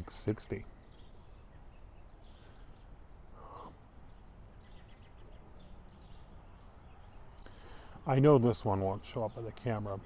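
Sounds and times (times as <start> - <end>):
distant birds chirping: 0.0 - 10.0.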